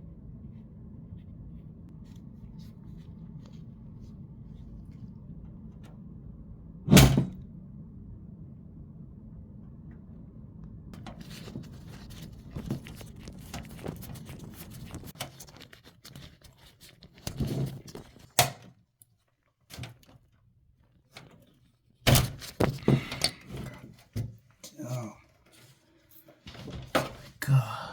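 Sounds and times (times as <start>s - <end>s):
steady low hum: 0.0s - 15.2s.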